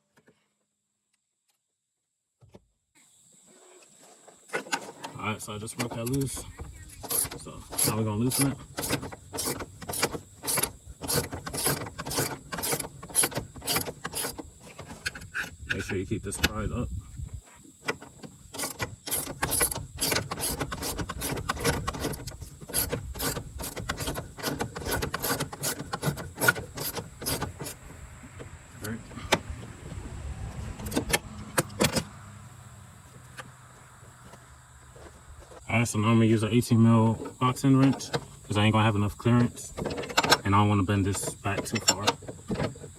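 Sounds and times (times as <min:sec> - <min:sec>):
ratchet wrench clicking: 0:06.9 - 0:14.4, 0:18.5 - 0:27.8.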